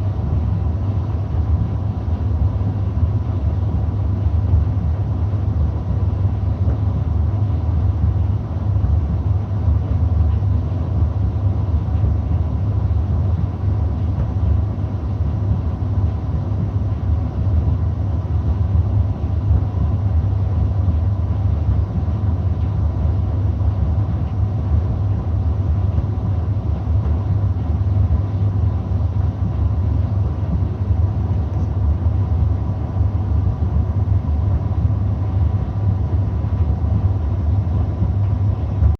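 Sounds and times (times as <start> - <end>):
tumble dryer running: 9.1 - 38.9.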